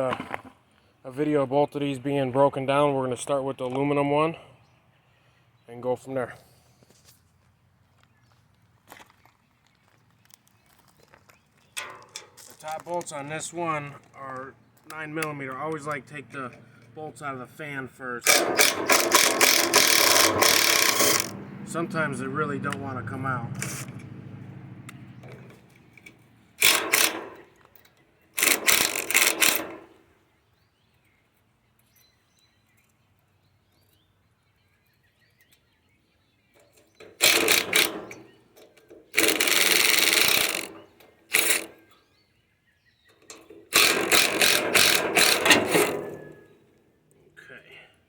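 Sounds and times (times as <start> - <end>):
power driver bursts: 18.2 - 21.4, 26.6 - 27.6, 28.4 - 30.0, 37.1 - 38.4, 39.2 - 41.8, 43.7 - 46.5.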